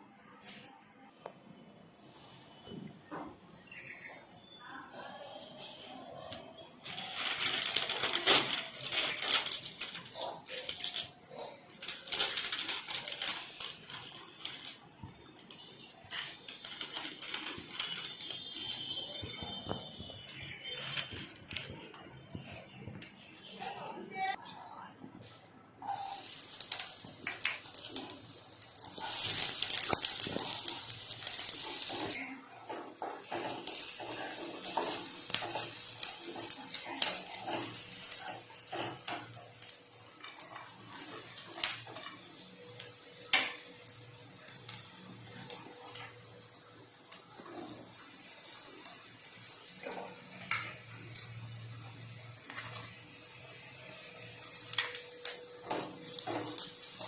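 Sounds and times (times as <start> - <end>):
metal utensils clinking and scraping: 25.8 - 43.8, 49.3 - 57.0.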